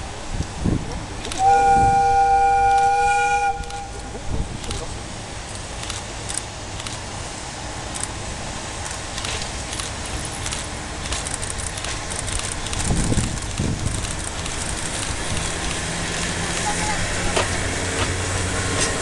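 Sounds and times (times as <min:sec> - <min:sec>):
locomotive rumbling past: 0:00.0 - 0:19.0
sharp clicks of rails: 0:08.8 - 0:16.3, 0:17.4 - 0:19.0.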